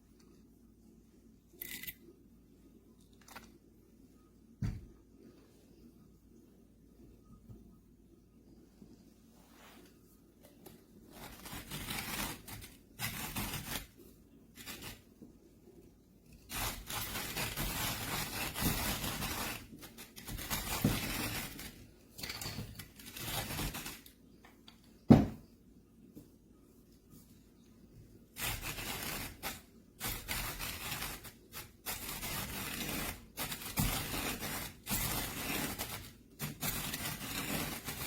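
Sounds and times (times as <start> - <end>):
scraping and rustling: 28.4 - 38.0.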